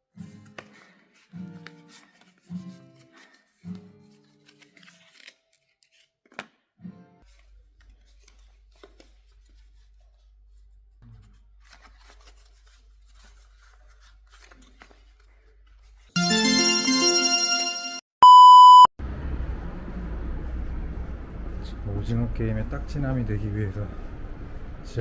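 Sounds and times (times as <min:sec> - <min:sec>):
paper being handled: 0:00.5 - 0:06.4, 0:07.3 - 0:10.7, 0:11.3 - 0:16.1
plucked guitar notes: 0:16.2 - 0:18.0.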